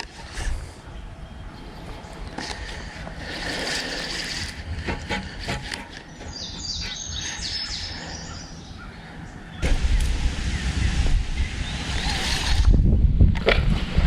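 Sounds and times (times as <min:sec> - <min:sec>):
steady low rumble: 0:00.0 - 0:14.0
bird singing high chirps: 0:06.1 - 0:12.2.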